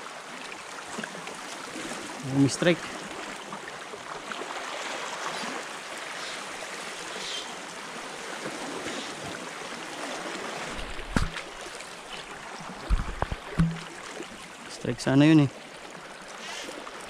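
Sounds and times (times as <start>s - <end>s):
seawater lapping along shore: 0.0s - 17.0s
low thumps: 12.8s - 14.0s
sharp low knock: 12.9s - 13.9s.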